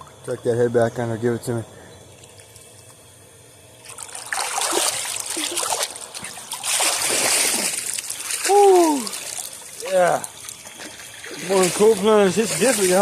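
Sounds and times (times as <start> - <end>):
water splashing and dribbling: 3.8 - 13.0.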